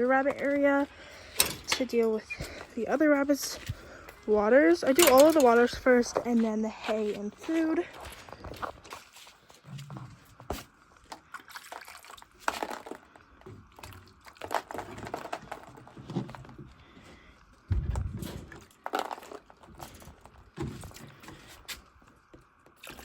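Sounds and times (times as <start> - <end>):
water sloshing: 11.1 - 13.1.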